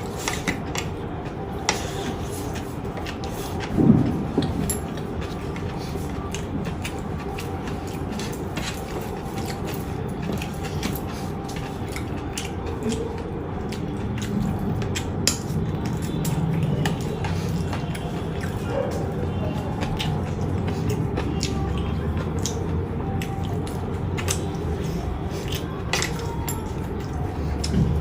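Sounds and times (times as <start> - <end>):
chewing food: 0.0 - 28.0
steady background hum: 0.0 - 28.0.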